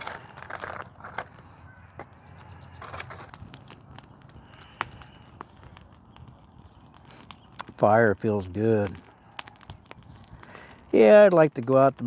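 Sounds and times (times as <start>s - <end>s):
campfire crackling: 0.0s - 12.0s.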